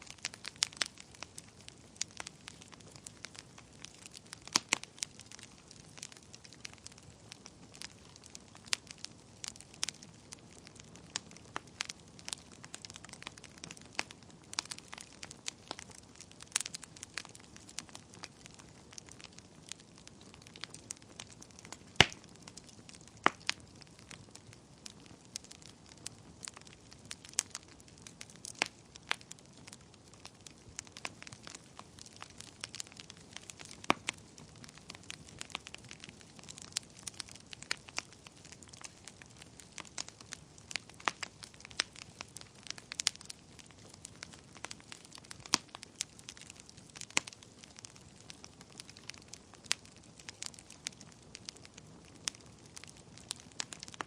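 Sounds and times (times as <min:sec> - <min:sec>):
faint steady hiss: 0:00.0 - 0:54.0
wood fire crackling and popping: 0:00.0 - 0:54.0.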